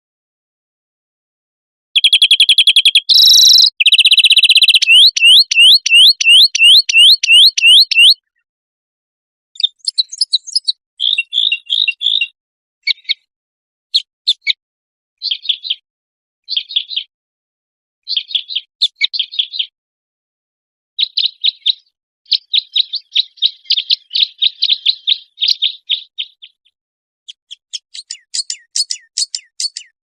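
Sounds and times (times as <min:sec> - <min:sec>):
songbird song: 0:02.0 - 0:08.5, 0:09.6 - 0:13.3, 0:15.2 - 0:15.8, 0:16.4 - 0:17.1, 0:18.0 - 0:19.8, 0:21.0 - 0:30.0.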